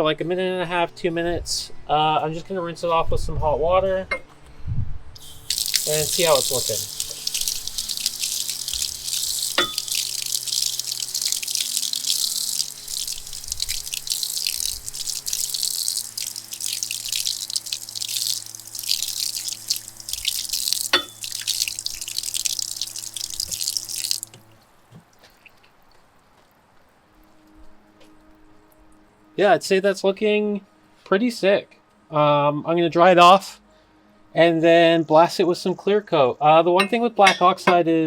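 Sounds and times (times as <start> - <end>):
water running and splashing on metal: 5.2 - 24.6.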